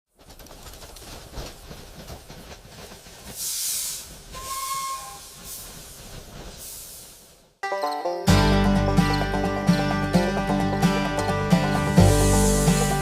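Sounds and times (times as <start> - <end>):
steam train clattering: 0.4 - 7.3, 10.9 - 13.0
steam hissing: 3.4 - 7.5, 12.0 - 13.0
train whistle: 4.4 - 5.4.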